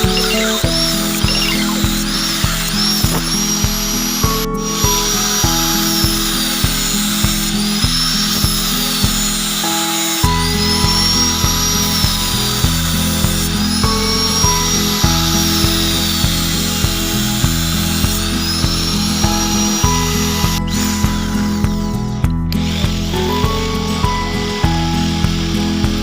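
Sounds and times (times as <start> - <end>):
high sweeping synth figure: 0.0 - 3.1
background music with steady beat: 0.0 - 26.0.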